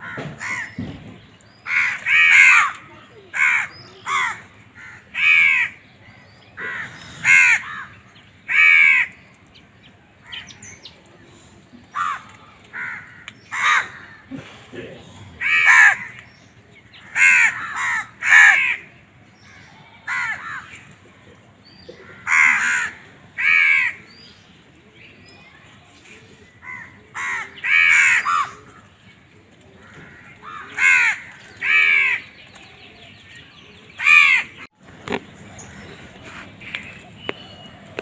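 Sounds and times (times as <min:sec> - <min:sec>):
crows cawing: 0:00.0 - 0:00.8, 0:01.6 - 0:05.8, 0:06.6 - 0:09.2, 0:11.9 - 0:14.5, 0:15.4 - 0:16.3, 0:17.0 - 0:20.8, 0:22.0 - 0:24.1, 0:26.6 - 0:28.8, 0:29.8 - 0:32.4.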